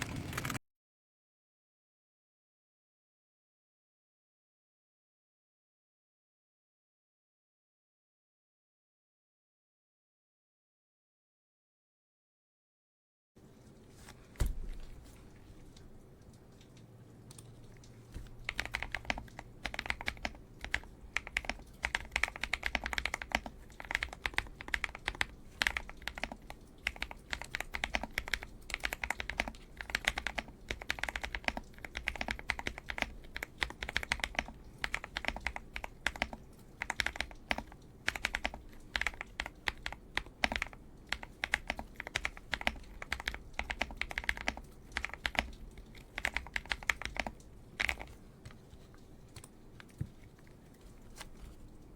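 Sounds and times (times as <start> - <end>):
mechanical keyboard typing: 0.0 - 0.6, 18.2 - 51.8.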